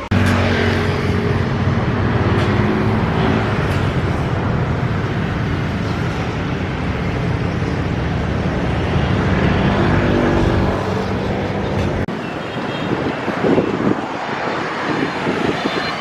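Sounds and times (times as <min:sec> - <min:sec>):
vehicle engine hum: 0:00.0 - 0:12.2
road noise: 0:00.0 - 0:16.0.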